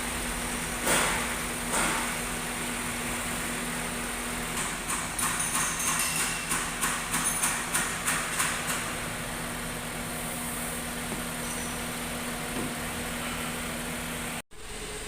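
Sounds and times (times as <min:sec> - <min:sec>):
engine running with low hum: 0:00.0 - 0:05.0, 0:08.2 - 0:15.0.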